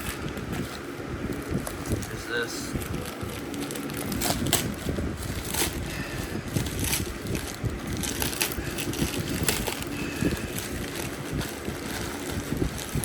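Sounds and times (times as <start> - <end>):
packaging crinkling and tearing: 0.0 - 13.0.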